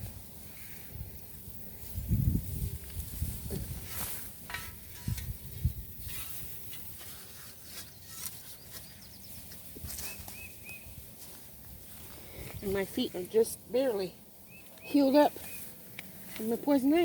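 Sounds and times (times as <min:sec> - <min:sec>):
scraping and rustling: 0:02.6 - 0:10.4.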